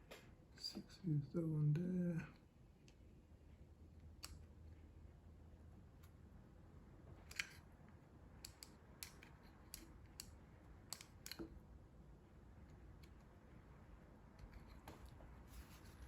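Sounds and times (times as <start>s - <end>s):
low background hum: 0.0s - 16.0s
small plastic clicks and taps: 4.2s - 4.4s, 8.4s - 11.6s.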